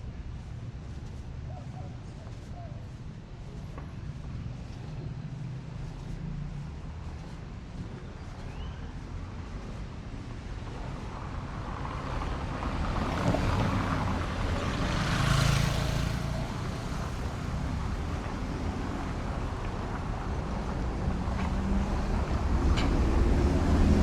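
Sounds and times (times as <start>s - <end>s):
traffic engine rumble: 0.0s - 24.0s
vehicle passing close by: 11.4s - 18.7s, 20.7s - 24.0s.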